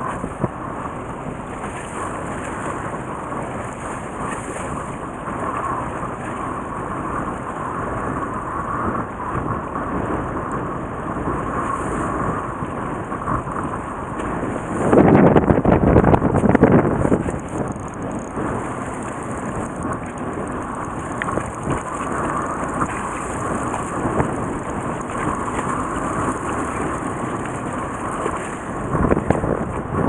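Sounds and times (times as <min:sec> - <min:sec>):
fishing boat noise: 0:00.0 - 0:30.0
steady wind: 0:00.0 - 0:30.0
wind gust buffeting microphone: 0:06.7 - 0:30.0.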